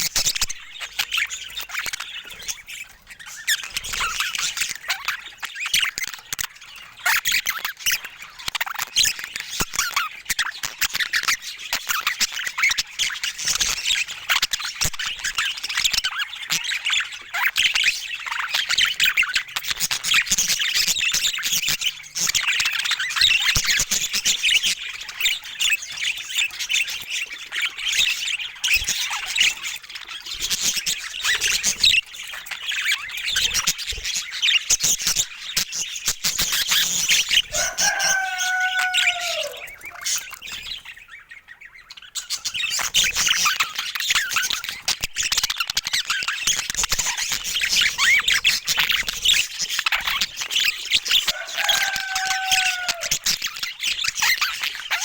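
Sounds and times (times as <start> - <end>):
budgies chattering and warbling: 0.0 - 55.0
long low bird call: 37.5 - 40.3.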